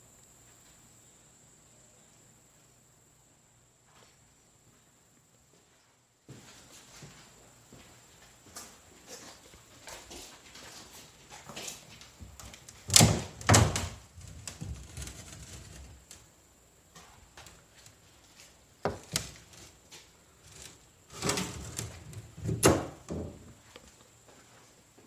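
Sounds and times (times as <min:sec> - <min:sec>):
loud knocks and thumps: 0:12.9 - 0:15.8.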